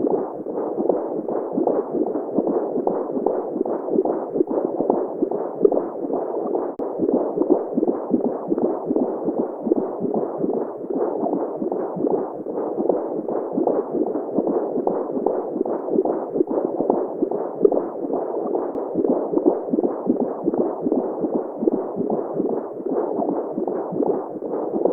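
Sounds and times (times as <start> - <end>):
rhythmic heartbeat pulsing: 0.0 - 24.9.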